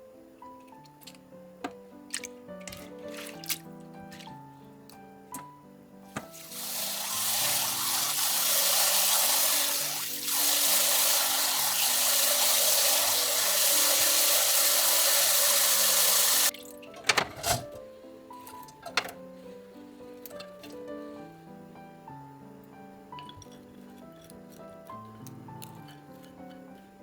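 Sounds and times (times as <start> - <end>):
tap running into sink: 6.1 - 17.8.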